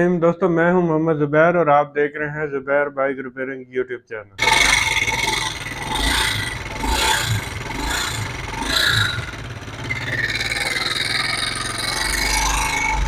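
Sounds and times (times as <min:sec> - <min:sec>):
engine knocking and rattling: 0:04.4 - 0:13.0
engine running rough: 0:04.4 - 0:13.0.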